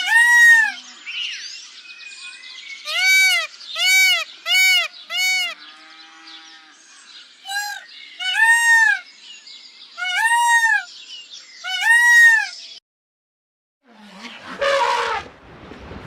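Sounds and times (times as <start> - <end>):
animal calling in high rising-falling calls: 10.0 - 10.9.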